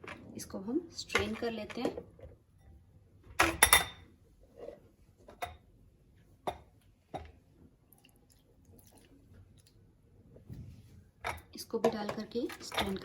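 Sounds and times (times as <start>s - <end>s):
kitchenware clattering: 1.0s - 2.3s, 3.3s - 4.1s, 11.2s - 13.0s.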